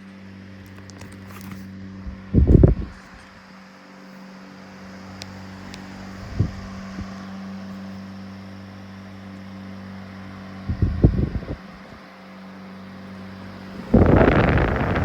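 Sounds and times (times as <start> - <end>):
electric fan motor hum: 12.4 - 15.0
rush of moving air: 13.4 - 15.0
low thumps: 13.5 - 15.0.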